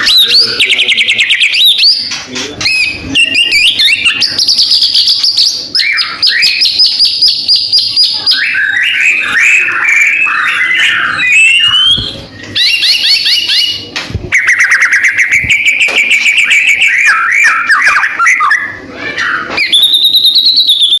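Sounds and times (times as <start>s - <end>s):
songbird whistles and trills: 2.6s - 21.0s.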